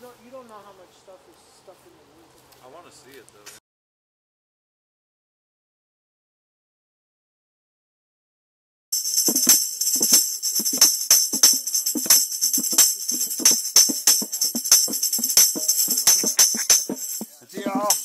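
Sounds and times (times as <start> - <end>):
high jingling percussion: 8.9 - 18.0
regular drum hits: 9.0 - 18.0.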